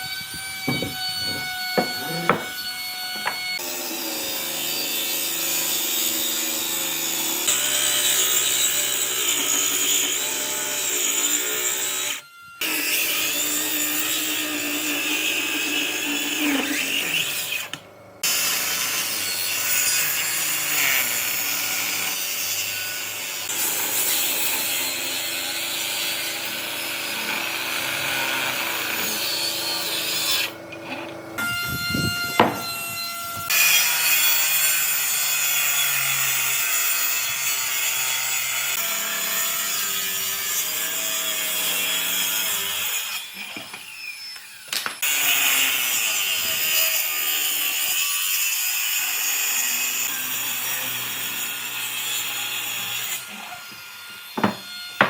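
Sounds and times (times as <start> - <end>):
power tool rasping wood: 0.0 - 44.4, 45.0 - 55.0
sharp knocks: 0.6 - 2.6, 54.4 - 54.7.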